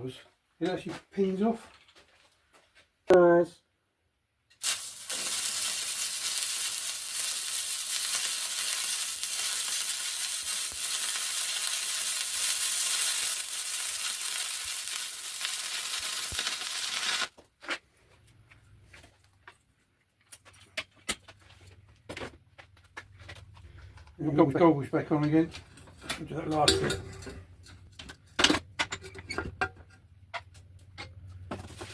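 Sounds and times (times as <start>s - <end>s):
stick welder arc burning: 4.6s - 17.3s.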